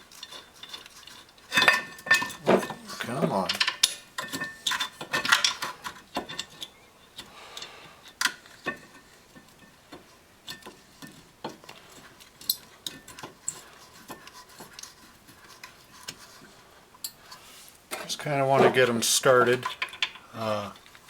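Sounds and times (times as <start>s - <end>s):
metal bolts and wrench clinking: 0.1s - 7.3s, 17.0s - 20.9s.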